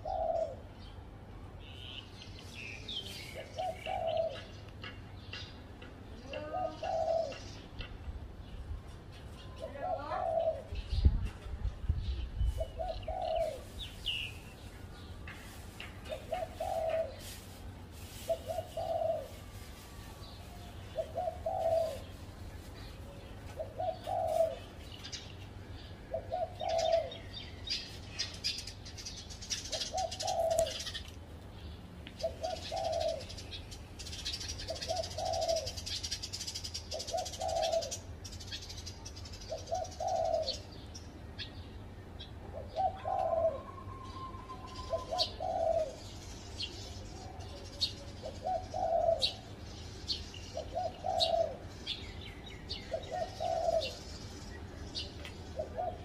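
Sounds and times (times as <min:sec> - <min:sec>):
dove cooing: 0:00.0 - 0:00.7, 0:03.4 - 0:04.6, 0:06.3 - 0:07.6, 0:09.6 - 0:10.8, 0:12.5 - 0:14.0, 0:16.1 - 0:25.0, 0:26.1 - 0:27.4, 0:29.6 - 0:31.0, 0:32.2 - 0:38.7, 0:39.4 - 0:40.8, 0:42.4 - 0:46.2, 0:47.2 - 0:49.6, 0:50.5 - 0:51.7, 0:52.7 - 0:54.2, 0:55.0 - 0:56.0
small birds chirping: 0:00.0 - 0:56.0.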